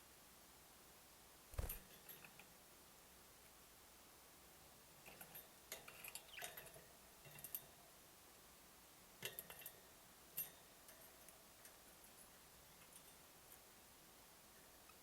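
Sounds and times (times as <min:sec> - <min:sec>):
budgies clicking and chirping: 0:06.0 - 0:06.6.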